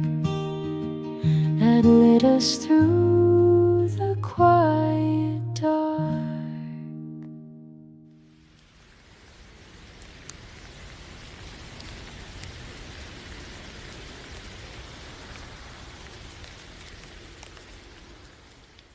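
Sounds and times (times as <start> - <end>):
steady rainfall: 8.1 - 18.9
raindrop ticks: 8.4 - 18.9.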